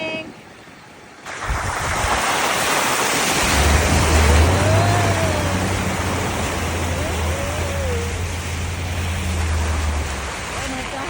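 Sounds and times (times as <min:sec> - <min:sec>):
road and wind noise: 0:00.0 - 0:11.0
low engine hum: 0:03.4 - 0:11.0.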